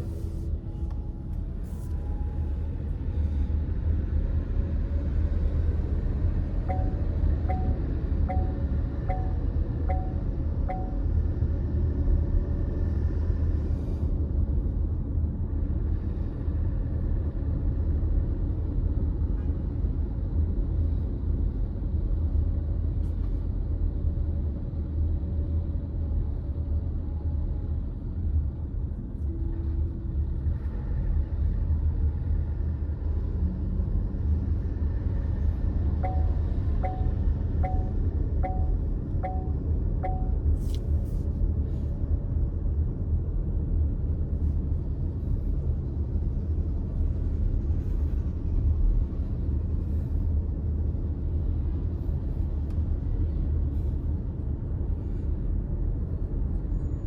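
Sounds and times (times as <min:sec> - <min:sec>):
car engine and road rumble: 0:00.0 - 0:57.0
car chime beeping: 0:06.7 - 0:11.0, 0:36.0 - 0:40.4.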